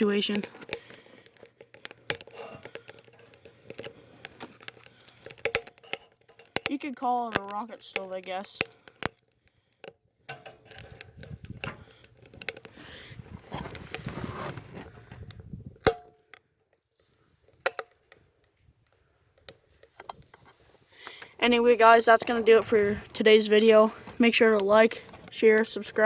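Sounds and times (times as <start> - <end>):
rustling: 0.0 - 15.9
kindling crackling and popping: 0.0 - 26.0.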